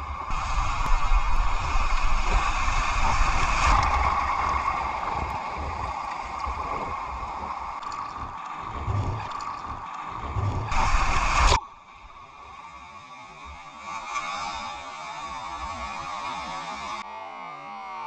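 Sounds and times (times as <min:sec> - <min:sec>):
low rumble: 0:00.0 - 0:12.4
water rushing around kayak: 0:00.0 - 0:16.4.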